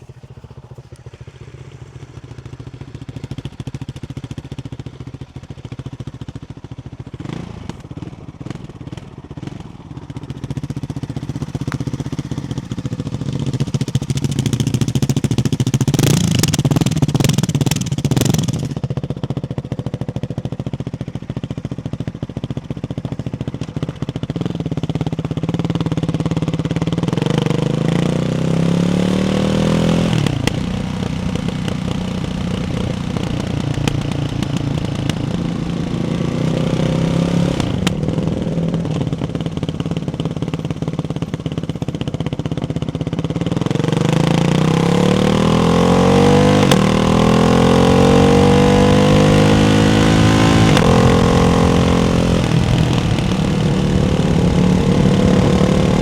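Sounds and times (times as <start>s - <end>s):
motorcycle engine revving: 0.0s - 56.0s
exhaust crackle: 28.9s - 56.0s.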